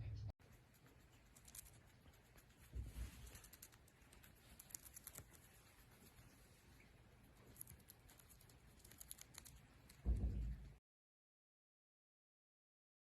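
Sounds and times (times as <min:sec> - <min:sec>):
soft low thump: 0:09.9 - 0:10.8.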